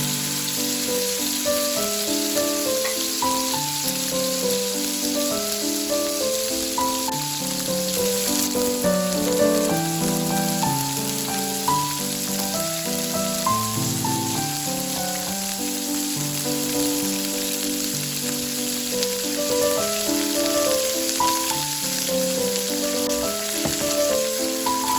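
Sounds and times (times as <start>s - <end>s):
food sizzling in a pan: 0.0s - 24.9s
instrumental background music: 0.0s - 24.9s.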